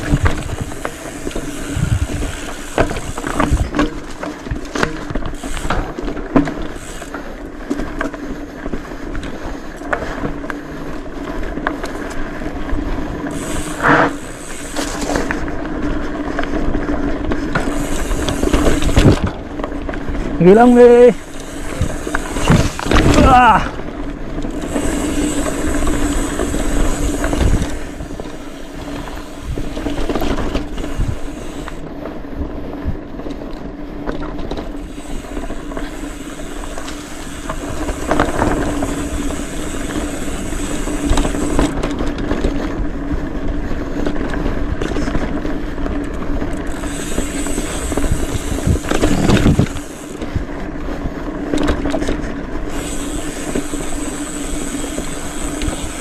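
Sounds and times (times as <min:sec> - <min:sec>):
wind on microphone: 0:00.0 - 0:03.8, 0:24.6 - 0:33.1, 0:46.5 - 0:56.0
steady buzz: 0:00.0 - 0:07.5, 0:13.2 - 0:15.6, 0:17.5 - 0:19.4, 0:24.4 - 0:31.8, 0:34.7 - 0:41.8, 0:46.6 - 0:50.5, 0:52.6 - 0:56.0
bike rattling and knocking: 0:00.0 - 0:56.0
tyres on dirt and gravel: 0:00.0 - 0:56.0.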